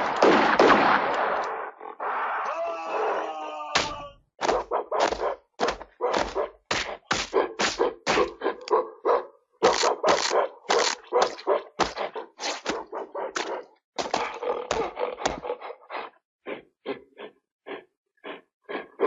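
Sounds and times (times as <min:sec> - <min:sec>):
fight thuds and bangs: 0:03.7 - 0:08.4, 0:10.0 - 0:12.8, 0:13.4 - 0:15.4.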